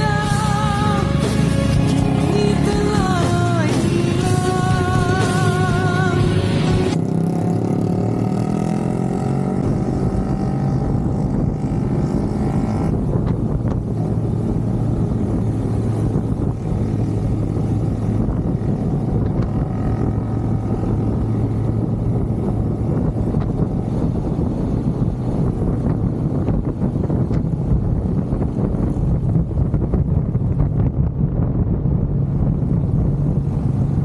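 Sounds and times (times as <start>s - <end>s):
music: 0.0s - 7.0s
vehicle engine accelerating: 0.0s - 34.0s
wind noise: 0.0s - 34.0s.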